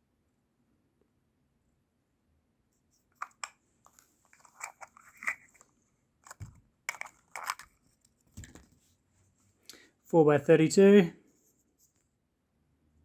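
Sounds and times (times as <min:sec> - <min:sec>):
packaging rustling and clicking: 0:03.2 - 0:05.6, 0:06.2 - 0:08.8.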